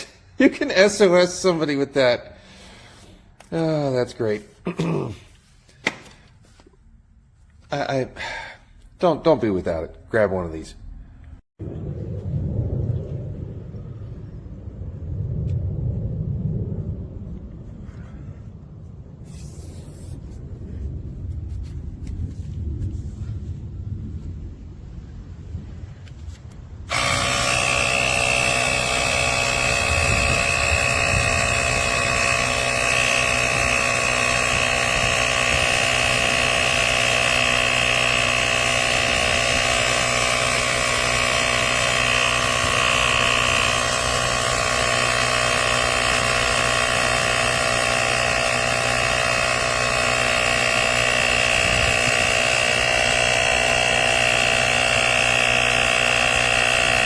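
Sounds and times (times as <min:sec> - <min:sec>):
tire inflator compressor running: 0:26.9 - 0:57.0.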